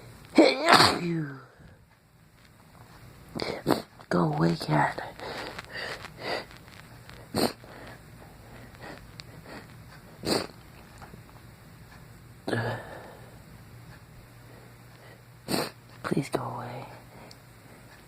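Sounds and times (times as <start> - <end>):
man sneezing: 0.4 - 1.2
sniffles: 3.4 - 3.9, 7.2 - 7.7, 8.8 - 10.6, 15.4 - 15.8.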